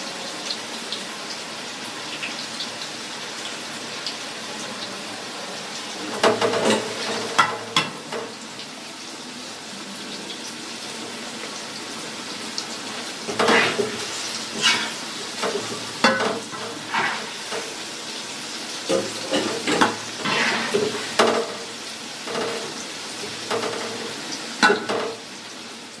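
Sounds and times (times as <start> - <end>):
food sizzling in a frying pan: 0.0 - 26.0
metal spatula scraping a pan: 13.3 - 18.3, 18.9 - 25.1.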